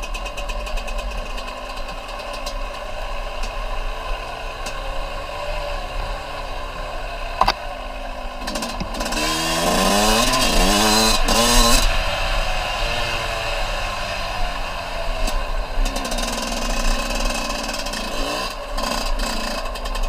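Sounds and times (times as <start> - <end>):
off-road vehicle engine revving: 0.0 - 20.0
sharp click: 7.4 - 7.6.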